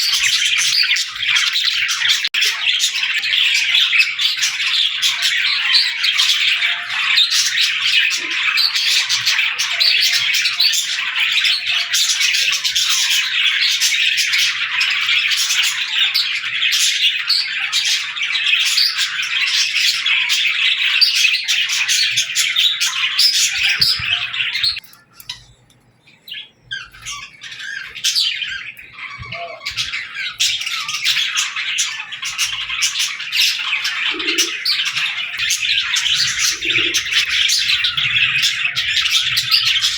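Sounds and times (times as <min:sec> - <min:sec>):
flock of small birds chirping: 0:00.0 - 0:39.9.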